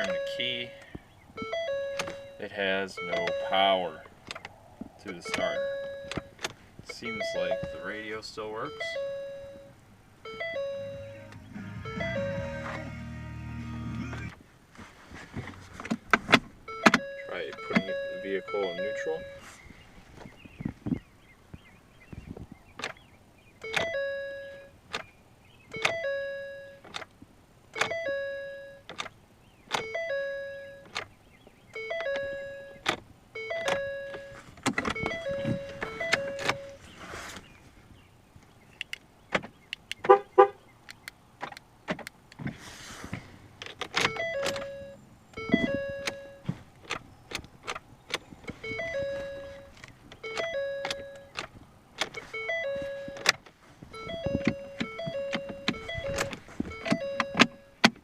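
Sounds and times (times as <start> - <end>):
car warning chime dinging: 0.0 - 4.1, 5.1 - 14.3, 16.6 - 19.5, 23.6 - 24.8, 25.7 - 26.8, 27.8 - 28.9, 29.7 - 31.0, 31.7 - 36.9, 44.0 - 46.5, 48.5 - 51.4, 52.2 - 58.0.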